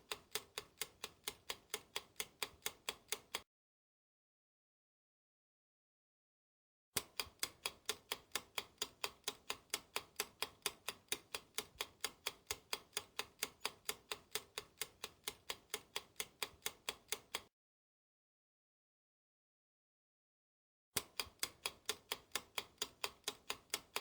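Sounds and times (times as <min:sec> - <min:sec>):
clock ticking: 0:00.0 - 0:03.4, 0:07.0 - 0:17.5, 0:21.0 - 0:24.0.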